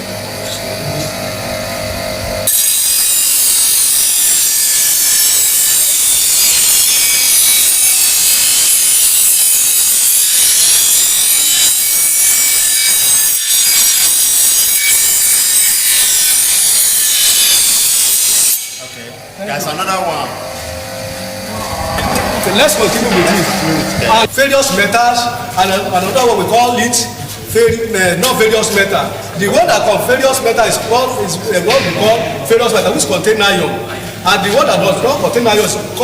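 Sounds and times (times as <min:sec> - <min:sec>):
metal grinding hiss: 0:02.5 - 0:19.1.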